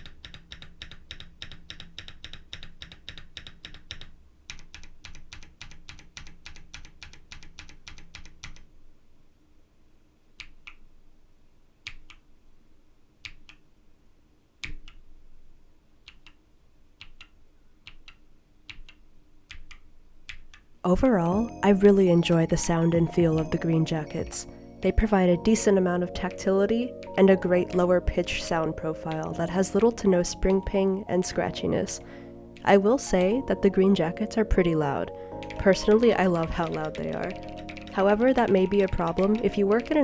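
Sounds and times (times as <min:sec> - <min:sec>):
mechanical keyboard typing: 0:00.0 - 0:08.7, 0:17.0 - 0:21.5, 0:22.7 - 0:30.7, 0:31.3 - 0:40.0.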